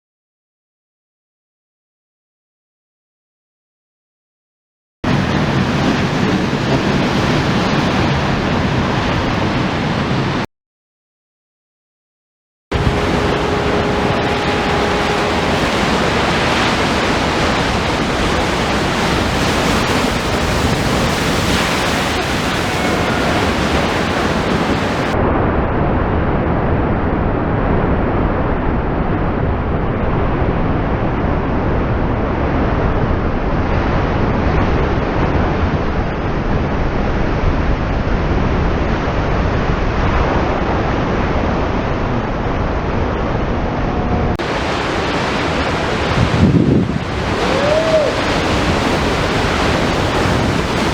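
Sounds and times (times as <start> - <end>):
wind on microphone: 5.0 - 10.5, 12.7 - 50.9
ocean waves breaking on rocks: 12.8 - 25.2, 44.4 - 50.9.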